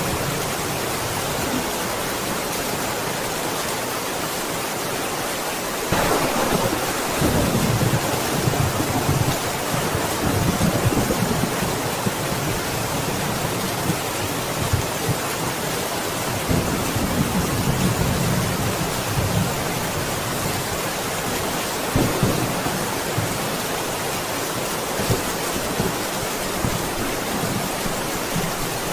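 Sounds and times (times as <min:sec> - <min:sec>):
heavy rain: 0:00.0 - 0:28.9
low thunder rumbling: 0:05.9 - 0:15.2, 0:21.9 - 0:23.6.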